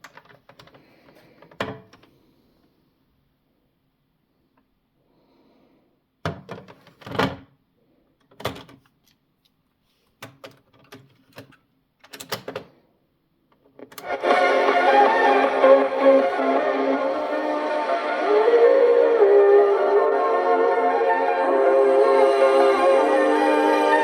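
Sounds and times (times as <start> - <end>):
music from cassette recorder: 14.0 - 24.0.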